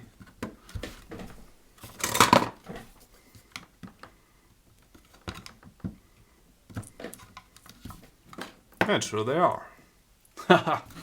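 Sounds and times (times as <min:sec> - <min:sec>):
plastic case being handled: 0:00.1 - 0:04.1.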